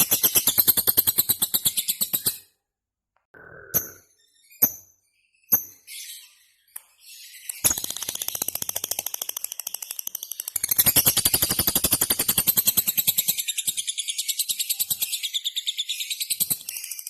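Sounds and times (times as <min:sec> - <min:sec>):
bird chirping and trilling: 0:03.4 - 0:08.6, 0:12.3 - 0:17.0.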